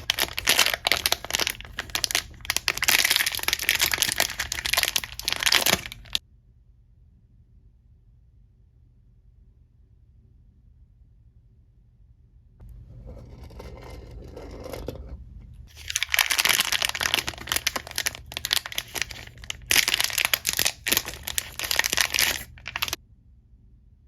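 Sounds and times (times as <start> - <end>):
packaging crinkling and tearing: 0.0 - 6.2, 15.7 - 23.0.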